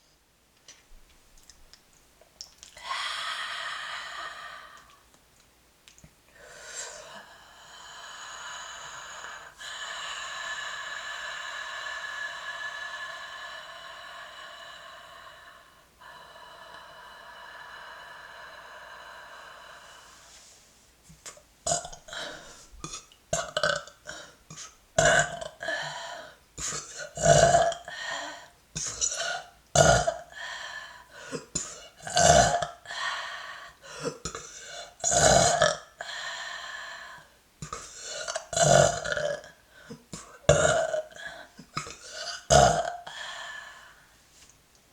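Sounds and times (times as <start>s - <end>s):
woman burping: 35.0s - 35.9s, 40.2s - 43.1s.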